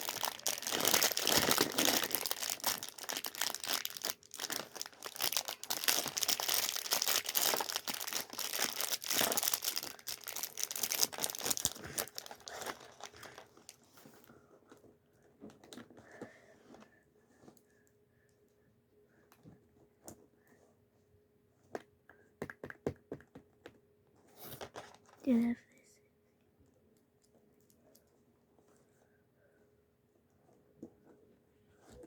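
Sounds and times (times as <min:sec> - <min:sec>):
packaging crinkling and tearing: 0:00.0 - 0:14.2.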